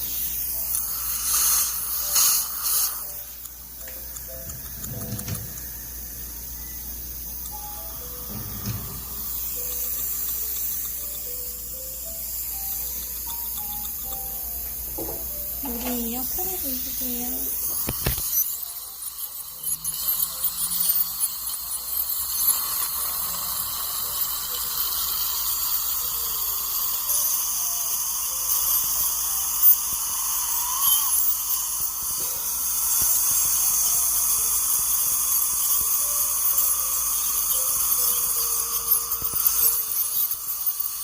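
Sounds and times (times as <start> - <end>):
water spray hiss: 0.0 - 3.4
dental scaler high whine: 0.0 - 41.0
dental suction: 0.0 - 41.0.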